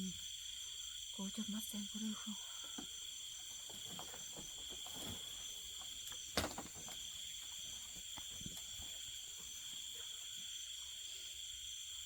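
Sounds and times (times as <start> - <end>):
crickets trilling: 0.0 - 12.0
faint rustles: 2.6 - 10.5.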